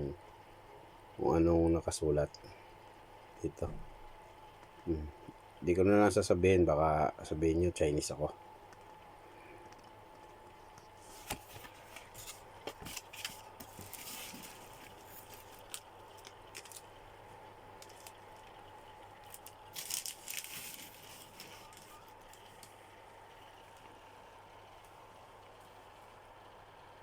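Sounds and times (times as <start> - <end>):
faint steady hum: 0.0 - 27.0
plastic packaging crinkling: 11.1 - 17.1, 17.7 - 22.8.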